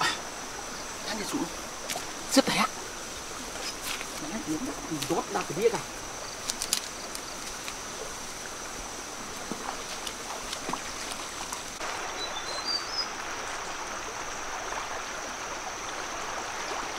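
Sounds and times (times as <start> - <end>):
water rushing: 0.0 - 16.9
bird chirps: 12.2 - 13.1.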